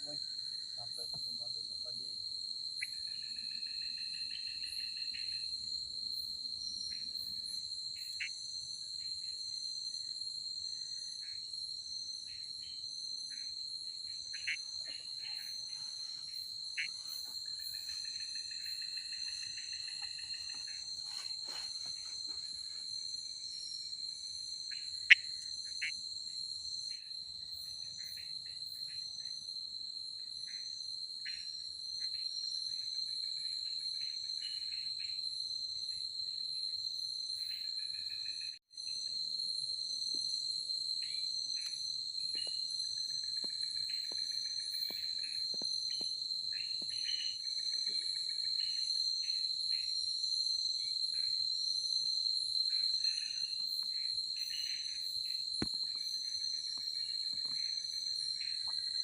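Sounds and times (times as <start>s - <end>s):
insect high-pitched trill: 0.0s - 59.0s
insects chirping: 0.0s - 59.0s.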